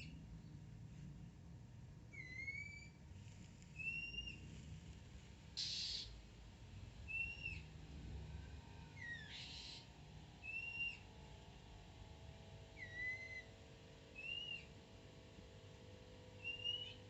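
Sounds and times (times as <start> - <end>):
bird whistled song: 2.1 - 3.0, 3.8 - 4.4, 5.6 - 6.1, 7.1 - 7.7, 9.0 - 9.8, 10.4 - 11.1, 12.8 - 14.7, 16.4 - 17.0.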